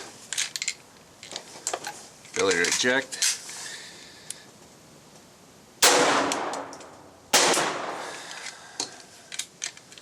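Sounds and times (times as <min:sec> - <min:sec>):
gunshots with echo: 0:05.8 - 0:08.3.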